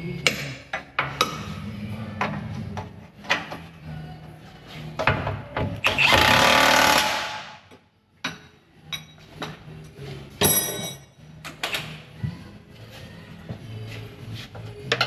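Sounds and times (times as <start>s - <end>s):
impact wrench hammering: 5.9s - 7.7s.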